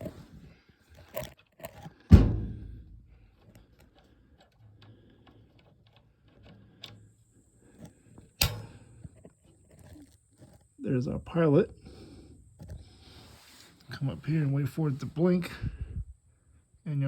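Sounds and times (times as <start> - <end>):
pilot igniter clicking: 1.6 - 10.8
loud thump: 2.1 - 3.0.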